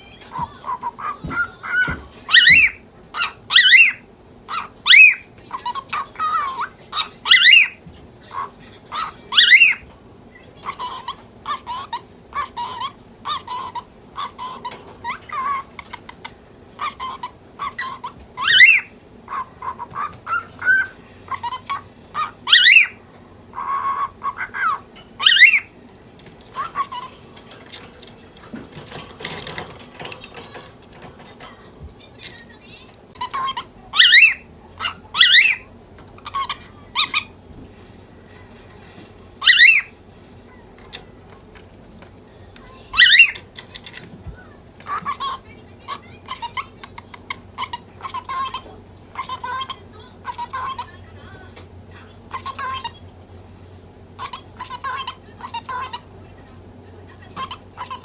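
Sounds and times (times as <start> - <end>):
cockatiel chattering: 0.0 - 9.9, 10.5 - 37.4, 39.4 - 51.4, 52.2 - 53.1, 54.1 - 56.3, 57.1 - 58.0
cockatiel chirping: 0.1 - 9.9, 10.6 - 25.7, 26.6 - 27.4, 32.2 - 37.3, 39.4 - 39.9, 42.9 - 43.4, 44.4 - 51.0, 52.3 - 53.0.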